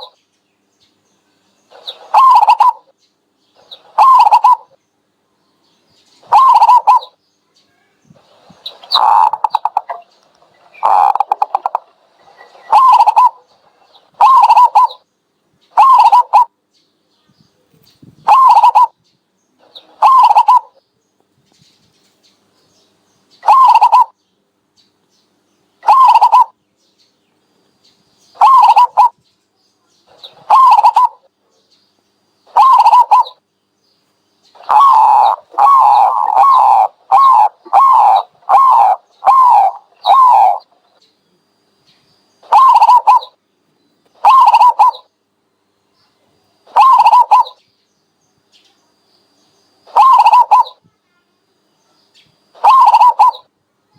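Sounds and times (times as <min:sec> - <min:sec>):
dove calling: 0:00.0 - 0:00.2, 0:01.7 - 0:04.8, 0:06.1 - 0:07.2, 0:08.1 - 0:15.1, 0:15.7 - 0:16.6, 0:17.7 - 0:19.0, 0:19.6 - 0:20.8, 0:23.3 - 0:24.2, 0:25.8 - 0:26.6, 0:28.2 - 0:29.2, 0:30.0 - 0:31.6, 0:32.4 - 0:33.5, 0:34.5 - 0:43.4, 0:44.0 - 0:45.2, 0:46.6 - 0:47.6, 0:49.7 - 0:50.9, 0:52.1 - 0:53.6.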